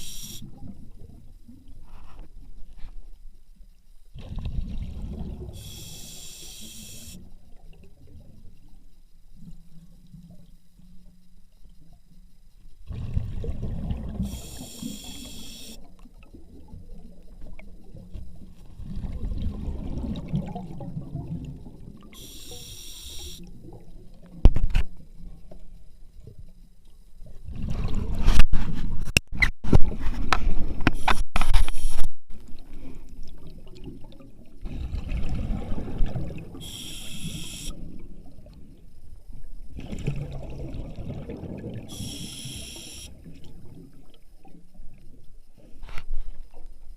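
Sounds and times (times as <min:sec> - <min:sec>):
scuba regulator breathing: 0:00.0 - 0:00.4, 0:05.6 - 0:07.2, 0:14.3 - 0:15.8, 0:22.2 - 0:23.4, 0:36.6 - 0:37.8, 0:41.9 - 0:43.1
exhaled bubbles: 0:04.2 - 0:07.2, 0:12.9 - 0:24.2, 0:27.4 - 0:28.4, 0:33.3 - 0:38.6, 0:39.7 - 0:44.2.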